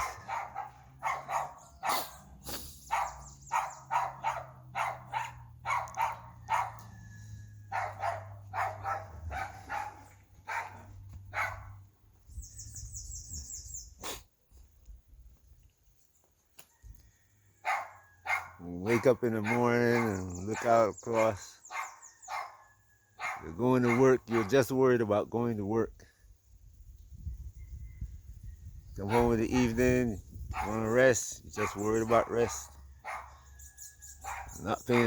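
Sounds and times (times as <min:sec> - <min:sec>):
dog barking: 0:00.0 - 0:07.1, 0:07.7 - 0:11.8, 0:17.6 - 0:24.6, 0:29.0 - 0:29.8, 0:30.5 - 0:30.9, 0:31.6 - 0:33.5, 0:34.2 - 0:35.0.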